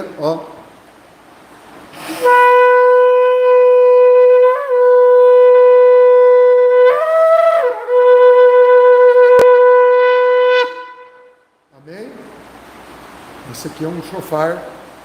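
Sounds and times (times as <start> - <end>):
shofar blown in held note: 2.0 - 11.5.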